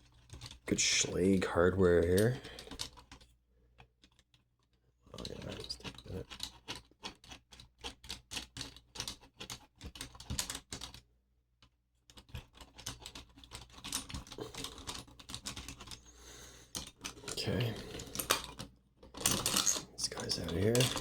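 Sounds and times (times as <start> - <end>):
small metal clicks and ticks: 0.0 - 3.3, 5.1 - 11.0, 16.7 - 21.0.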